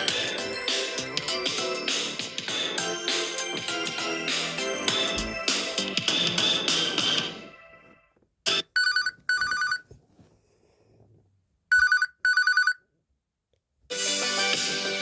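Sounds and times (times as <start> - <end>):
telephone bell ringtone: 8.6 - 9.8, 11.7 - 12.8
musical ringtone: 8.8 - 9.8, 11.7 - 12.8.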